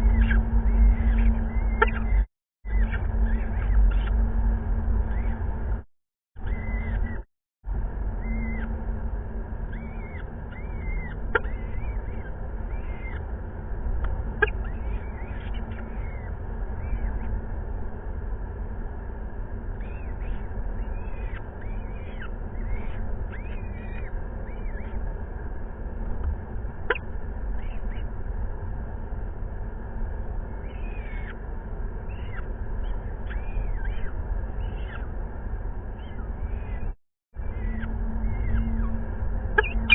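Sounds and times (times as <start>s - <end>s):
chicks begging calls: 0.0s - 4.3s, 5.0s - 5.4s, 6.4s - 7.2s, 8.2s - 8.8s, 9.7s - 13.3s, 14.3s - 17.4s, 19.8s - 25.1s, 30.6s - 31.4s, 32.1s - 35.2s, 35.9s - 39.9s
steady low rumble: 0.0s - 39.9s.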